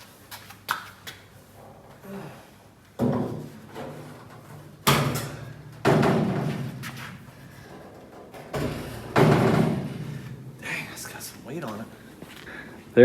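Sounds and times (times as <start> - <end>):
heavy steel door clunking: 8.3 - 10.2.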